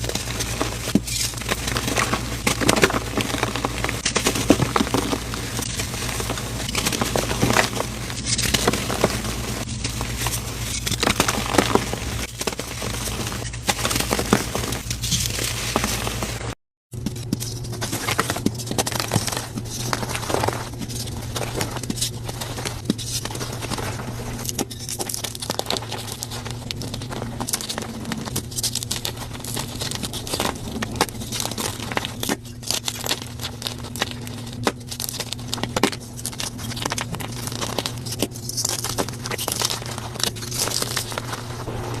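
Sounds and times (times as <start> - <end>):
chalk crunching by hand: 0.0 - 16.6
low steady hum: 0.0 - 42.0.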